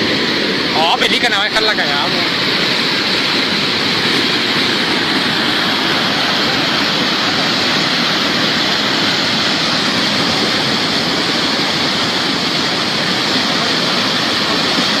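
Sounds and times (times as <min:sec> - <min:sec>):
floodwater rushing: 0:00.0 - 0:15.0.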